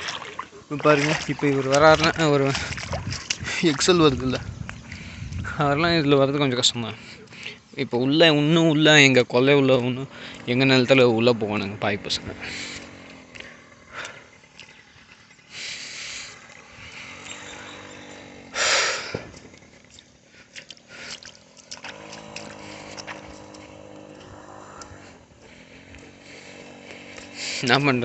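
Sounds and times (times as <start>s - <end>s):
small motorbike engine: 6.9s - 28.0s.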